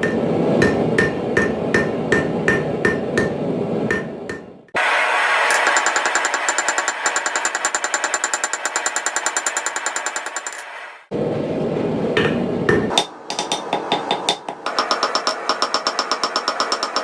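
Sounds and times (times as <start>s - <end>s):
hammer blows on steel: 0.0s - 4.5s
knocks: 0.0s - 4.5s.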